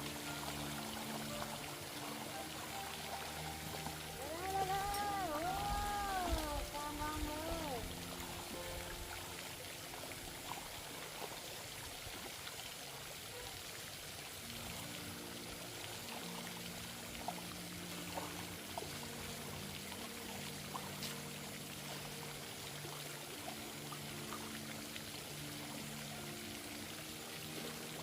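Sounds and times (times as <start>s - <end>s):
small splashes: 0.0s - 13.5s
water running: 0.0s - 28.0s.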